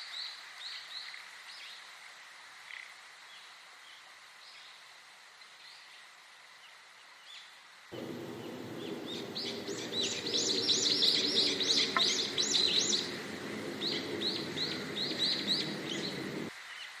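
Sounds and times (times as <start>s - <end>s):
small songbirds chirping: 6.6s - 17.0s
low rushing noise: 8.0s - 16.5s.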